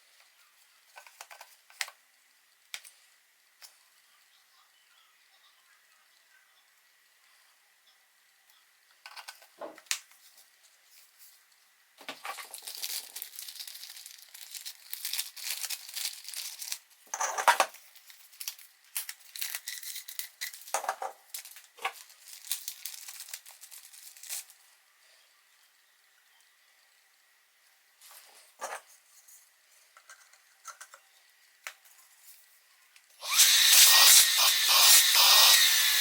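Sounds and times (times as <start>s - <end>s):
wrapping crinkling and tearing: 12.3s - 17.0s, 17.7s - 20.7s, 21.3s - 24.6s.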